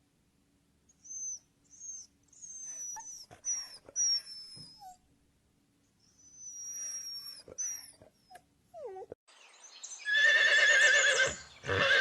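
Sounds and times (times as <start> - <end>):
dog whimpering: 1.0 - 5.0, 6.1 - 9.2.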